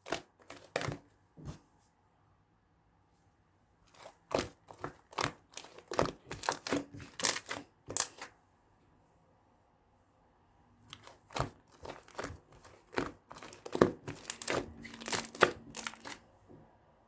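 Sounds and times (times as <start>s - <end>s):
crinkling and rustling: 0.0s - 2.0s, 3.9s - 8.4s, 10.9s - 16.5s.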